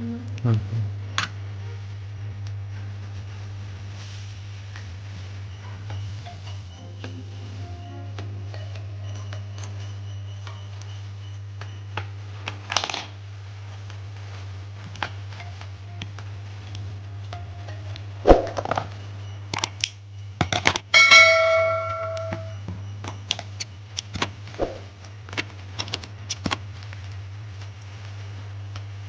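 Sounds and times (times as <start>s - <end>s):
steady low hum: 0.0s - 29.0s
metal piece ringing: 21.0s - 22.6s.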